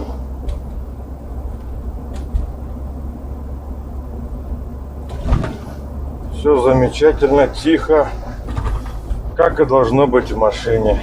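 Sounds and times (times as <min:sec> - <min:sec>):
vehicle cabin road rumble: 0:00.0 - 0:11.0.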